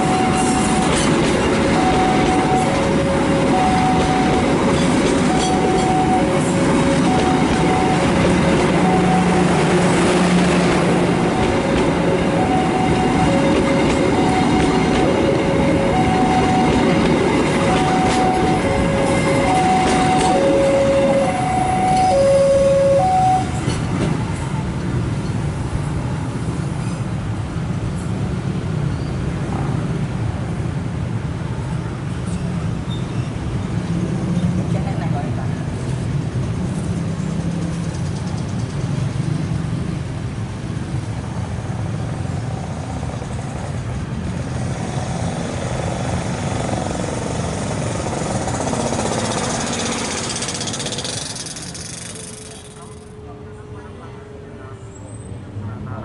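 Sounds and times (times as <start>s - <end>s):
two-tone electronic warning signal: 0.0s - 1.1s, 1.7s - 10.2s, 11.3s - 23.6s
train running on rails: 0.0s - 56.0s.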